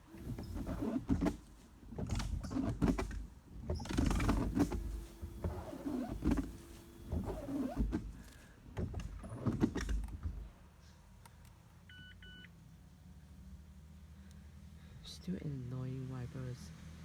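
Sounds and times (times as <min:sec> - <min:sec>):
wiper motor humming: 0:00.0 - 0:01.4, 0:03.7 - 0:08.3
windshield wipers sweeping glass: 0:00.1 - 0:10.4
wiper blades chattering: 0:04.1 - 0:07.8.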